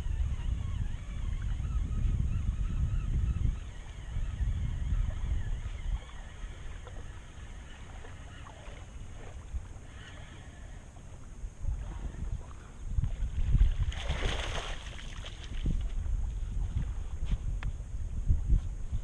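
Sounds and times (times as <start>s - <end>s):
wind rumbling on microphone: 0.0s - 19.0s
water lapping against boat: 3.6s - 17.2s.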